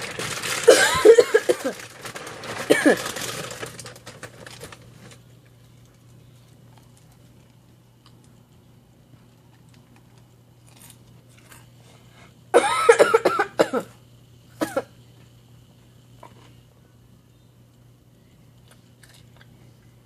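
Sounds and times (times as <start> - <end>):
person coughing: 0.6 - 1.8, 2.7 - 3.2, 12.5 - 14.0, 14.6 - 14.9.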